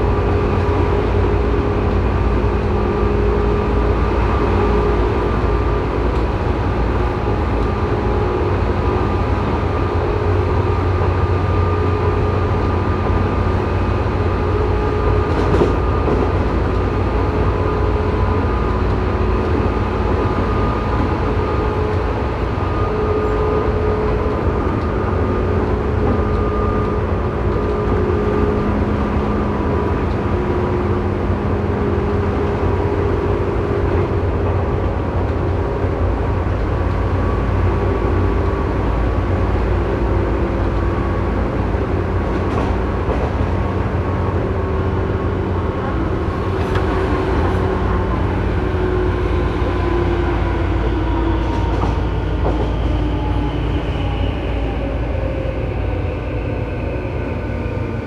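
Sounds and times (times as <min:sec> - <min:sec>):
electric train rumble: 0:00.0 - 0:58.0.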